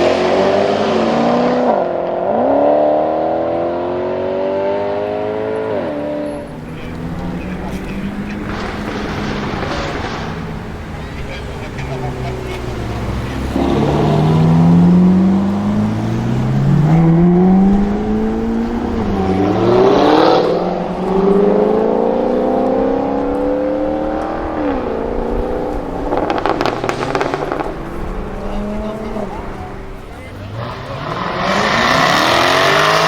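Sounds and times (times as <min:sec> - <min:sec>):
car engine accelerating hard: 0:00.0 - 0:33.0
exhaust crackles and pops: 0:06.4 - 0:30.9.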